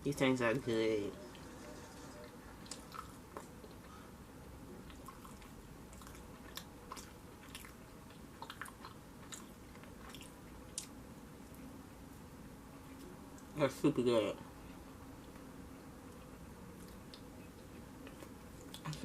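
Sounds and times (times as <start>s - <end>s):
person chewing food: 2.5s - 4.1s, 4.7s - 11.7s, 15.2s - 19.0s.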